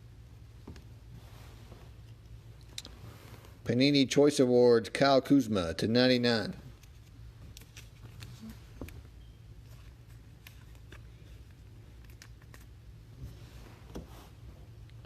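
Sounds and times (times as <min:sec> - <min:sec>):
steady low hum: 0:00.0 - 0:15.0
trading cards rustling and clicking: 0:06.7 - 0:12.7.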